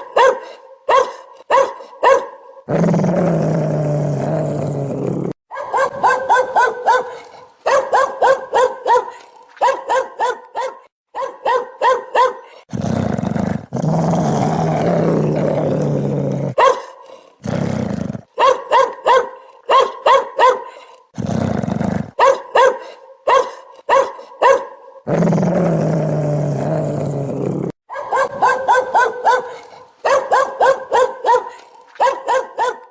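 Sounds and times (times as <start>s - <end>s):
dog barking ringtone: 0.2s - 2.4s, 5.5s - 7.1s, 7.7s - 12.4s, 18.4s - 20.7s, 22.2s - 24.7s, 27.9s - 29.5s, 30.1s - 32.8s
low dog growls: 2.7s - 5.4s, 12.6s - 18.3s, 21.0s - 22.2s, 25.1s - 27.8s.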